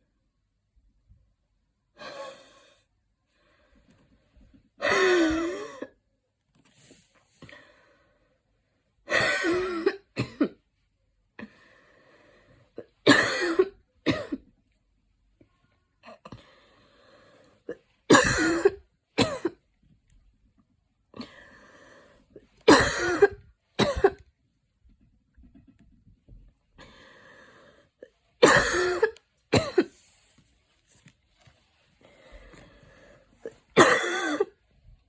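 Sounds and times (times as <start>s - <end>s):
woman coughing: 4.8s - 6.0s, 9.1s - 10.6s, 13.1s - 14.4s, 18.1s - 19.6s, 22.7s - 24.2s, 28.4s - 29.9s, 33.4s - 34.6s
faint breathing: 6.7s - 8.4s, 11.4s - 12.8s, 16.3s - 17.7s, 21.2s - 22.5s, 26.8s - 28.1s, 31.8s - 33.6s.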